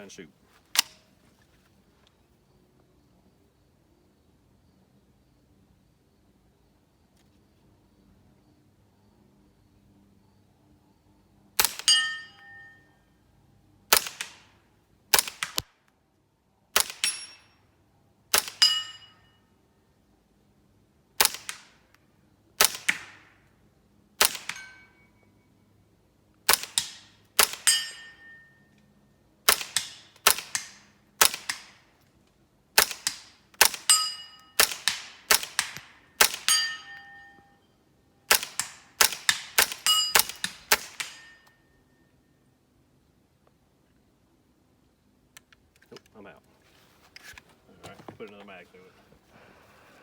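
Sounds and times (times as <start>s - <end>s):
suppressed rifle shots: 16.8s - 17.4s, 24.2s - 24.8s, 29.5s - 31.8s, 32.8s - 37.0s, 38.3s - 41.4s.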